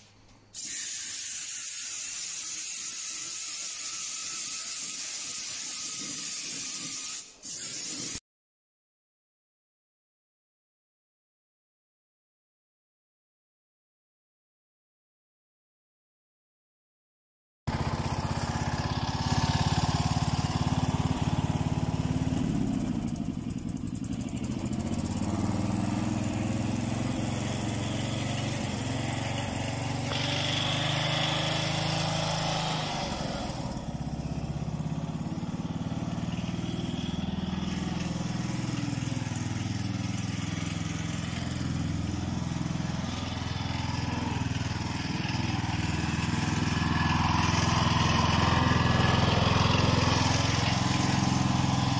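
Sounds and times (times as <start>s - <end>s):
lawn mower engine running: 17.7s - 51.9s.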